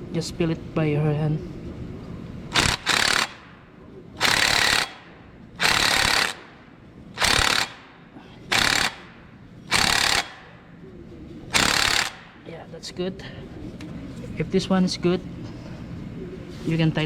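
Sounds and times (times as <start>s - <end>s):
ratcheting wrench clicking: 2.5s - 3.5s, 4.2s - 6.5s, 7.2s - 7.9s, 8.5s - 9.1s, 9.7s - 10.4s, 11.5s - 12.3s.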